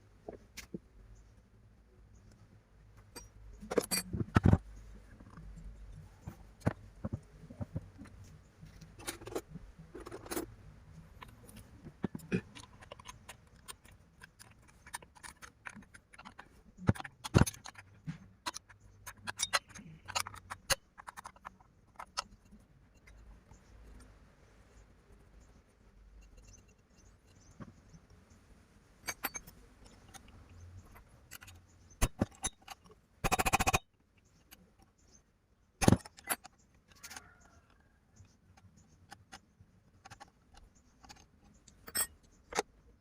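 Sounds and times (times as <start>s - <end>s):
metallic clinks and knocks of tools: 3.0s - 4.6s, 11.2s - 22.4s, 29.0s - 33.8s, 40.0s - 42.6s.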